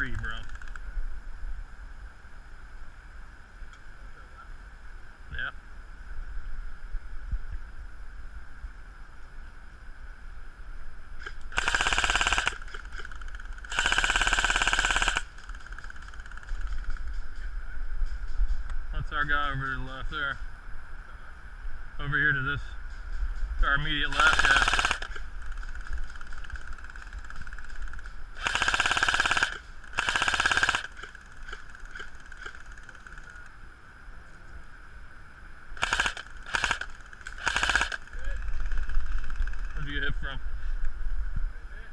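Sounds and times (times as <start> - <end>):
faint scattered shots: 11.2 - 17.2, 23.9 - 33.5, 35.8 - 40.1
airsoft gun full-auto fire: 11.3 - 16.8, 24.1 - 33.4, 35.8 - 39.7.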